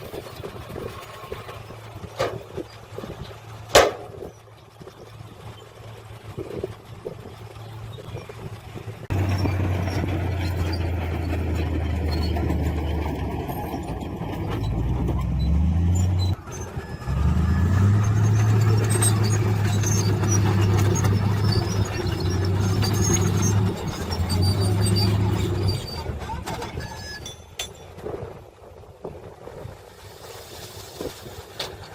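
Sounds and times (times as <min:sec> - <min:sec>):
heavy diesel engine revving: 0:09.0 - 0:26.2.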